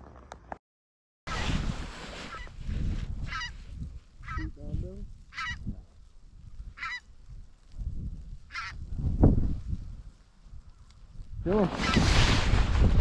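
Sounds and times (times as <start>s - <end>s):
geese honking: 3.3s - 3.6s, 4.2s - 4.6s, 5.3s - 5.6s, 6.8s - 7.1s, 8.5s - 8.8s.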